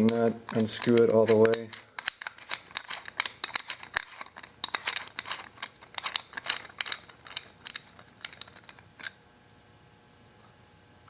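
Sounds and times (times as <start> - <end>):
socket ratchet clicking: 0.0 - 9.1
small metal clinks: 0.5 - 9.2.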